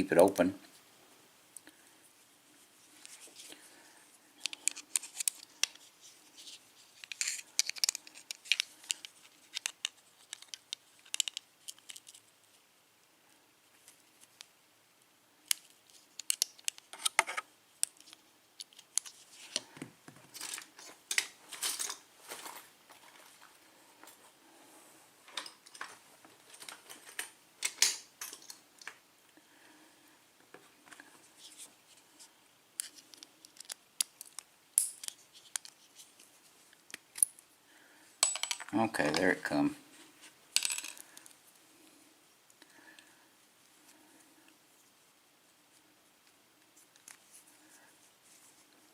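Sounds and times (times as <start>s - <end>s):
metal clicks and scrapes of tools: 7.0s - 12.2s.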